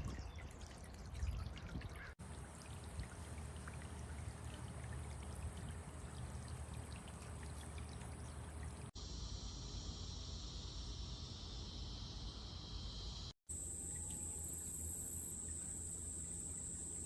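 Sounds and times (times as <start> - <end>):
insects chirring: 7.9 - 17.0.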